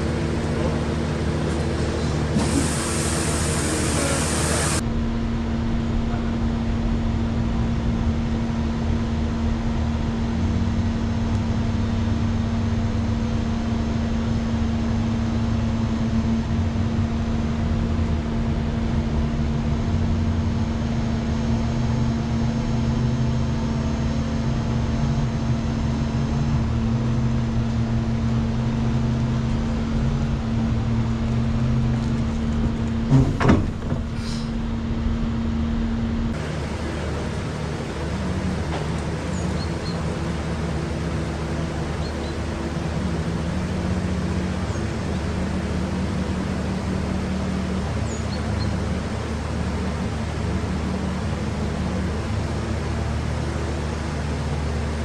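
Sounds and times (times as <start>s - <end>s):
high hiss: 0.0s - 4.8s
engine droning: 0.0s - 55.0s.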